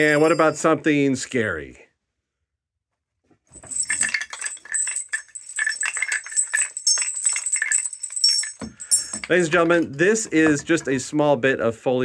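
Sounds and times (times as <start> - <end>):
bell-like rings: 0.0 - 0.7, 3.7 - 9.8
metal objects rattling and jingling: 0.0 - 0.7, 3.5 - 11.1.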